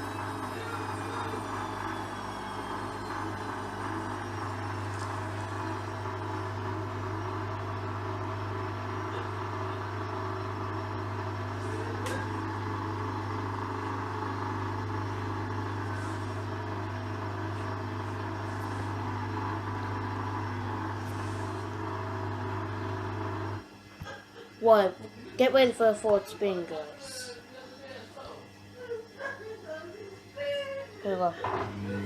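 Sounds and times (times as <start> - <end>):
washing machine drum spinning: 0.0 - 23.6.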